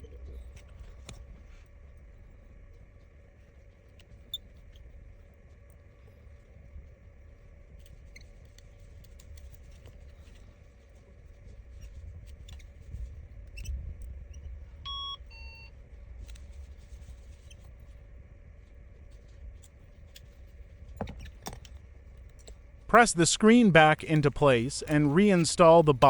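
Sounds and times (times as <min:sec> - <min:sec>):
short electronic beeps: 0:14.9 - 0:15.7.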